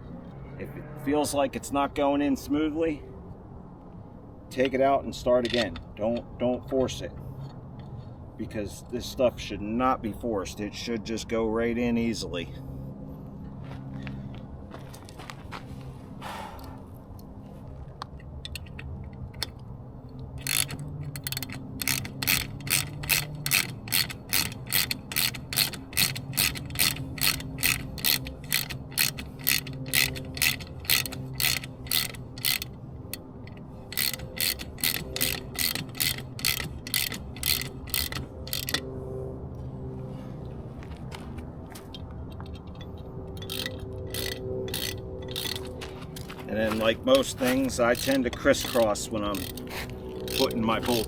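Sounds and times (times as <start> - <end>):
socket ratchet clicking: 18.4 - 19.6, 20.4 - 38.9, 42.3 - 51.0.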